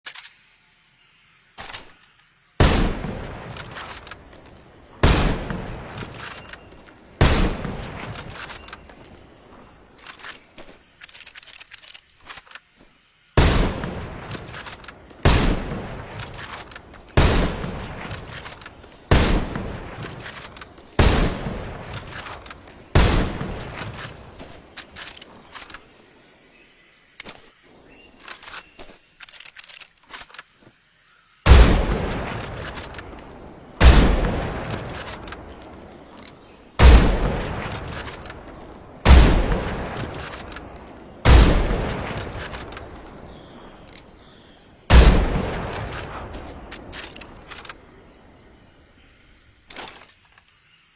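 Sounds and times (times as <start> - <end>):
rifle bolt metallic clicks: 0.0 - 0.4, 3.5 - 4.6, 6.0 - 7.0, 8.1 - 9.2, 10.0 - 12.7, 14.2 - 15.3, 16.1 - 17.4, 18.0 - 19.3, 20.0 - 21.2, 21.9 - 22.8, 23.7 - 25.9, 28.2 - 30.5, 32.3 - 33.4, 34.6 - 36.4, 37.6 - 39.2, 39.9 - 41.4, 42.1 - 43.2, 45.7 - 47.8, 49.7 - 50.5
rifle shots echoing: 2.6 - 4.4, 5.0 - 8.9, 13.4 - 25.1, 31.5 - 36.1, 36.8 - 43.9, 44.9 - 47.9.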